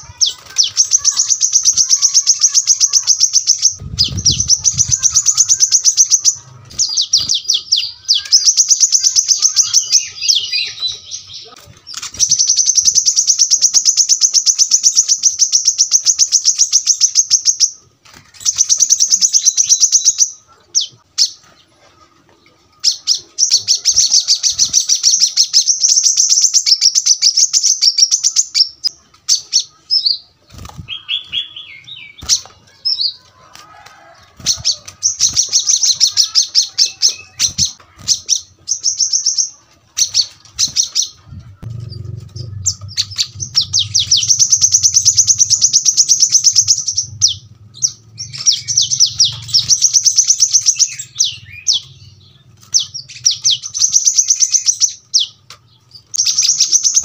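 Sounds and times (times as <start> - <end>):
bird singing rapid trills: 0.0 - 17.8, 34.4 - 57.0
bird chirps: 0.0 - 21.5, 22.8 - 33.2, 34.0 - 57.0
low hum: 41.1 - 50.0.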